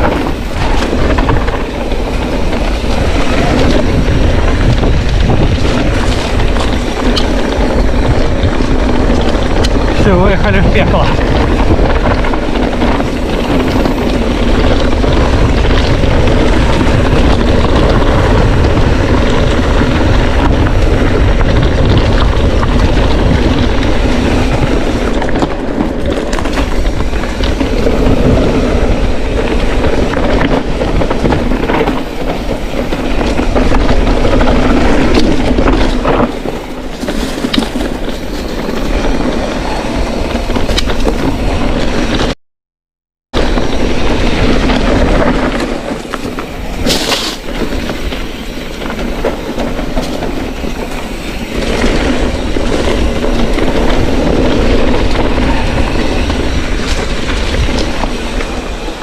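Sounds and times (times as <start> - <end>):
bike chain and frame clattering: 0.0 - 42.3, 43.4 - 59.0
bike tyres rumbling over stones: 0.0 - 42.4, 43.3 - 59.0.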